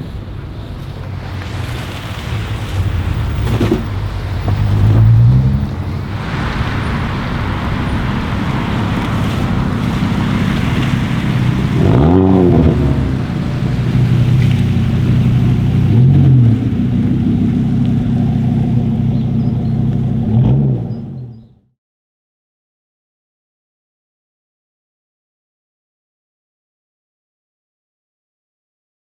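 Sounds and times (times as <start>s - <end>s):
car engine revving: 0.0s - 21.6s.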